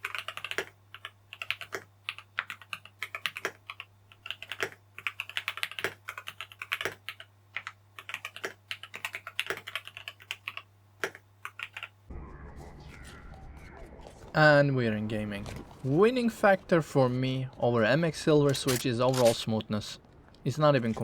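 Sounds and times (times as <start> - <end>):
typing on mechanical keyboard: 0.0 - 12.0
faint low hum: 0.0 - 21.0.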